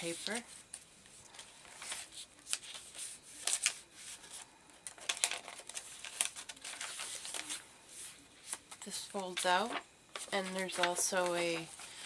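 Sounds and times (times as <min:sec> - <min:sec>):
paper rustling and scraping: 0:00.0 - 0:12.0.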